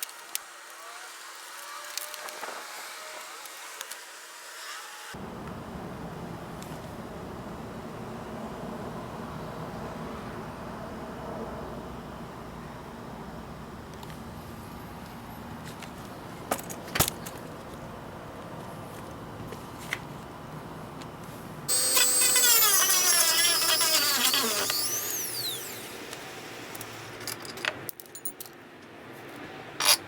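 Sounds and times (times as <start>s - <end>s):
power tool motor whining: 21.7s - 27.4s.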